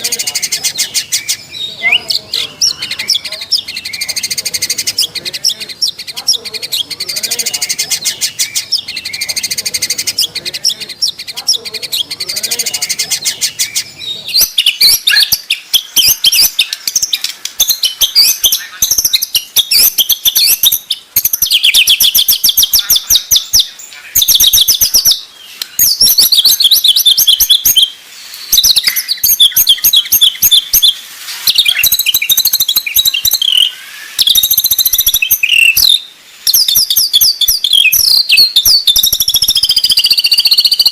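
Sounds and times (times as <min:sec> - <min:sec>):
songbird singing trills: 0:00.0 - 0:40.9.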